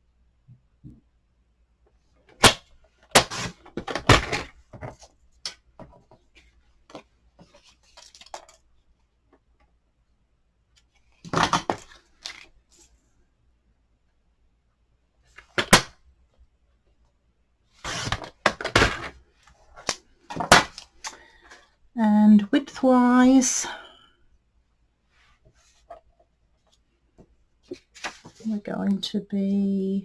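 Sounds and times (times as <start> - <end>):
paper rustling: 27.7 - 28.5.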